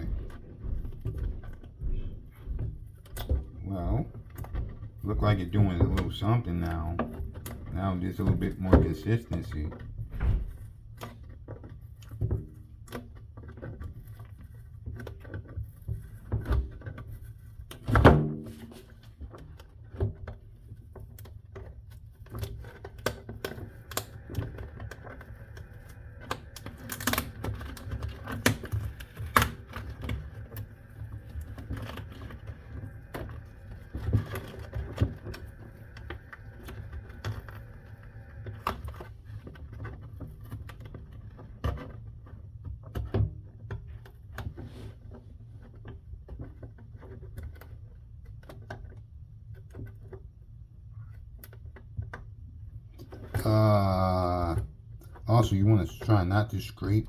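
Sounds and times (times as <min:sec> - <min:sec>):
griptape peeling crackles: 0:11.1 - 0:42.5.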